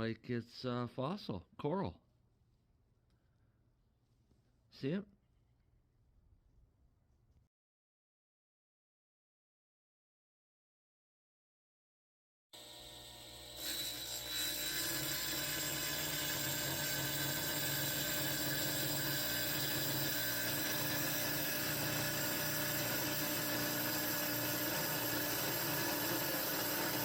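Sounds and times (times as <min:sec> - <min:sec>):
tile saw grinding rock: 0:13.5 - 0:27.0.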